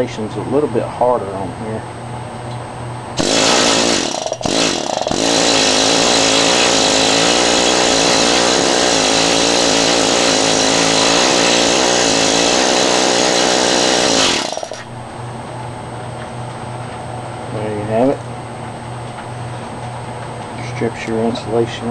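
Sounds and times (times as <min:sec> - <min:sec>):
planishing hammer pounding wire: 0:03.2 - 0:14.9.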